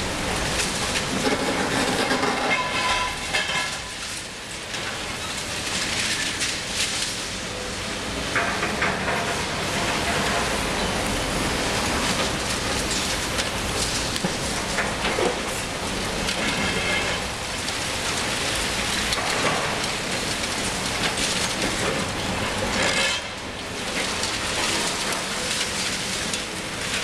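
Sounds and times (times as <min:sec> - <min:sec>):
excavator running: 0:00.0 - 0:27.0
concrete breaking and debris falling: 0:00.5 - 0:04.0.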